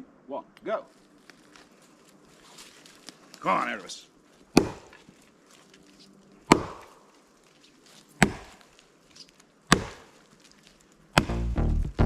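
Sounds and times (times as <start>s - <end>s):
axe chopping tree trunk: 4.5s - 5.1s, 6.5s - 7.0s, 8.2s - 8.7s, 9.7s - 10.4s, 11.1s - 11.6s.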